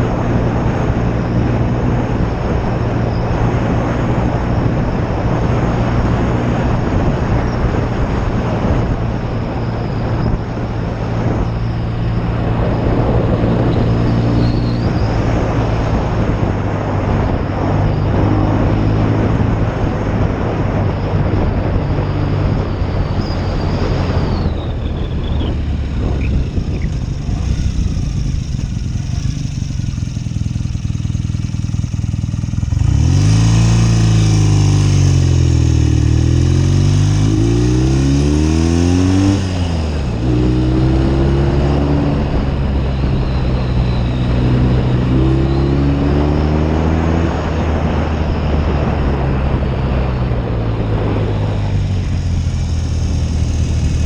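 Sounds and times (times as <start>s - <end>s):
motorcycle engine running: 0.0s - 54.0s
wind and road rush: 0.0s - 54.0s.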